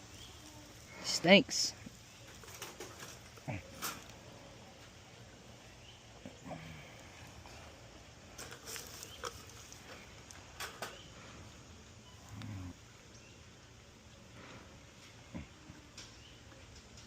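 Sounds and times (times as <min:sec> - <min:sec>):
opossum growling: 0:03.3 - 0:04.7, 0:06.0 - 0:08.0, 0:11.2 - 0:12.9, 0:15.2 - 0:15.8.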